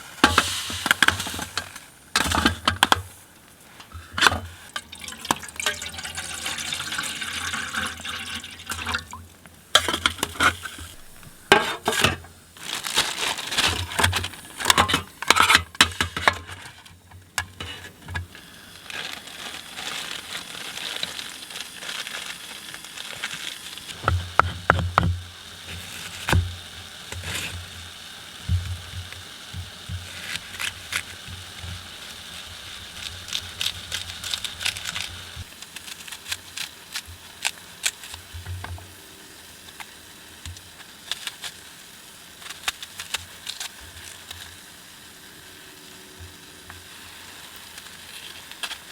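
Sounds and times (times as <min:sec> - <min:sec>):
water pouring into pot: 0:04.0 - 0:12.3.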